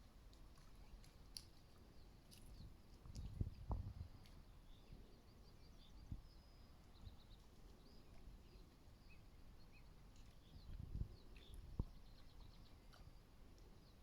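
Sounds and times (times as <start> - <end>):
faint bird chirps: 4.2 - 14.0.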